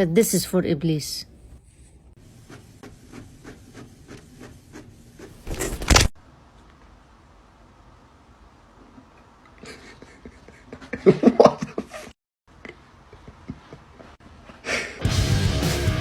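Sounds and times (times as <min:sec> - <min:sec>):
rock music with electric guitar: 0:15.0 - 0:16.0.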